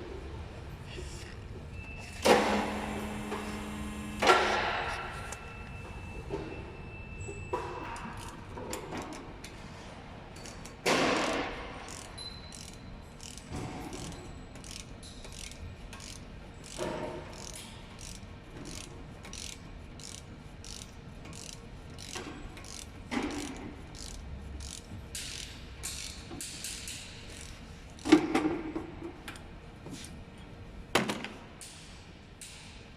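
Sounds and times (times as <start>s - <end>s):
ratchet wrench clicking: 10.4s - 28.2s.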